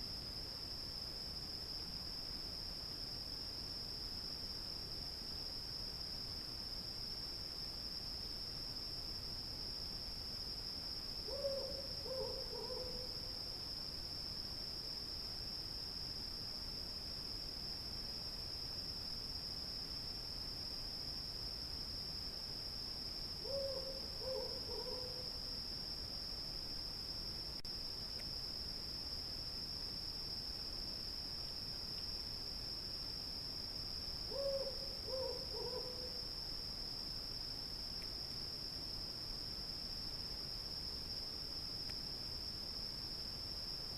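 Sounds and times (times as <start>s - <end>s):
cicadas droning: 0.0s - 43.9s
owl hooting: 11.3s - 13.1s, 23.4s - 25.2s, 34.3s - 36.2s.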